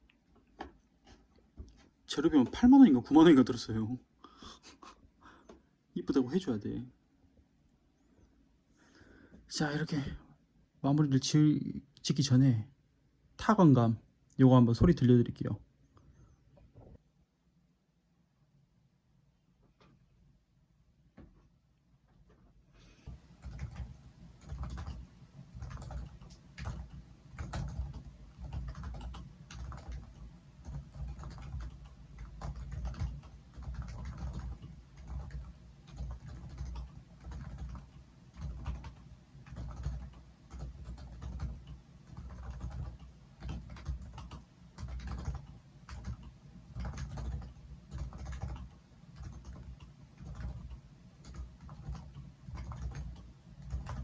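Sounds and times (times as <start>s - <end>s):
keyboard typing: 23.1s - 54.0s.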